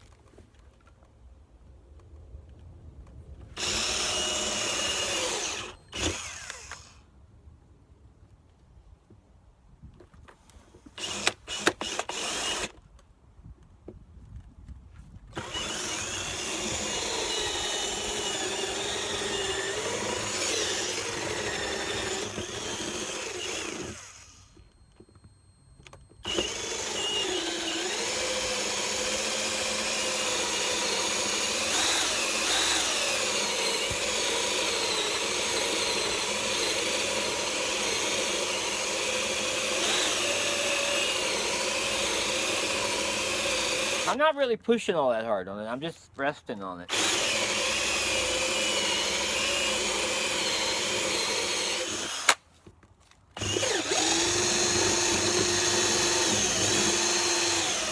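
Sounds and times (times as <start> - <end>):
electric drill boring into wood: 3.6 - 7.0, 11.0 - 12.8, 15.3 - 44.2, 46.9 - 52.4, 53.4 - 57.9.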